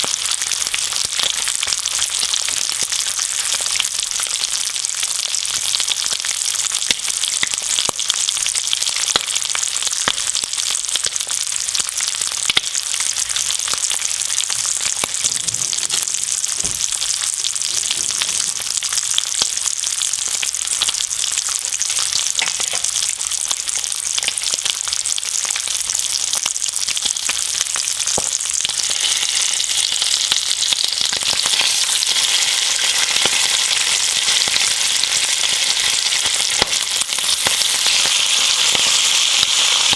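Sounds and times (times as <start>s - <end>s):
bacon and eggs sizzling: 0.0s - 39.9s.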